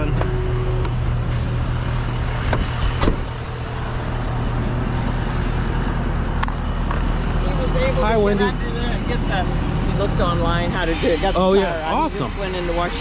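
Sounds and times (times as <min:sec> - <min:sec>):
truck engine idling: 0:00.0 - 0:13.0.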